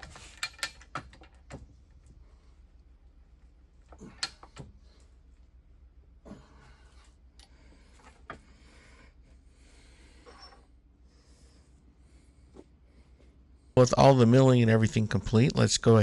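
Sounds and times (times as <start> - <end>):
metallic clicks and knocks: 0.0 - 1.7
low steady hum: 0.0 - 16.0.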